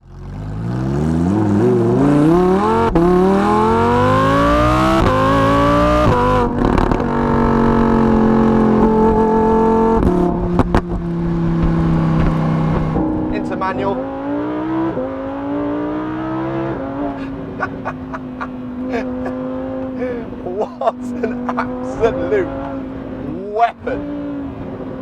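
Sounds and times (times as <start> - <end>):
sports car engine accelerating: 0.0 - 25.0
exhaust pops: 6.0 - 7.4, 10.0 - 13.8.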